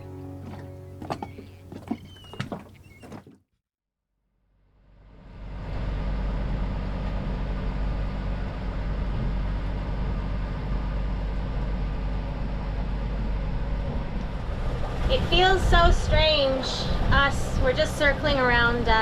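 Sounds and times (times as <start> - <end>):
boat engine droning: 0.0 - 3.4, 4.9 - 19.0.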